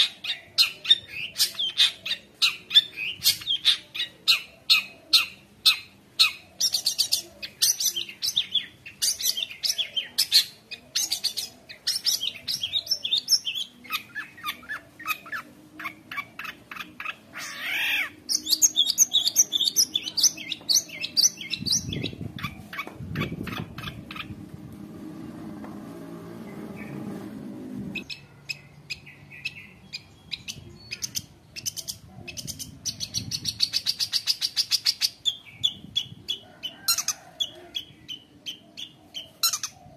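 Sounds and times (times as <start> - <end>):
bird singing sharp chirps and trills: 0.0 - 24.4, 28.0 - 39.9
lower rough sounds: 21.4 - 28.4.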